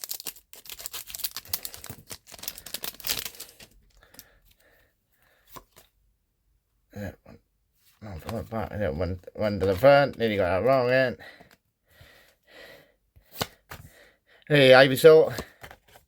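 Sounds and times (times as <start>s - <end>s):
foil wrapper tearing and crinkling: 0.0s - 4.2s.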